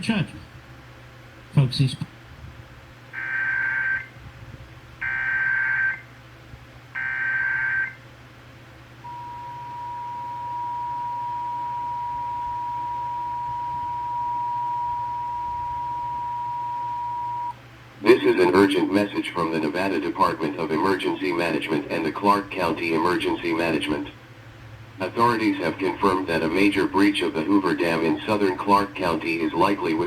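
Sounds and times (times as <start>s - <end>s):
harsh buzzing data bursts: 3.2s - 4.1s, 5.0s - 6.0s
two-tone attention signal: 9.1s - 17.5s.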